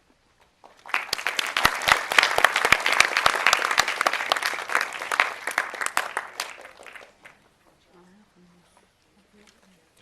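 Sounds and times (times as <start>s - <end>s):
audience applauding: 0.6s - 7.4s.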